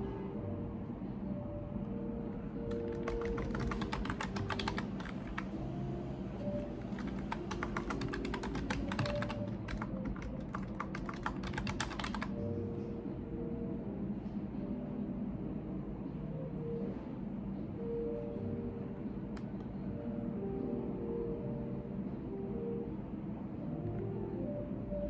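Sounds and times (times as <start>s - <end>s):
computer keyboard typing: 2.6s - 5.6s, 6.4s - 12.4s.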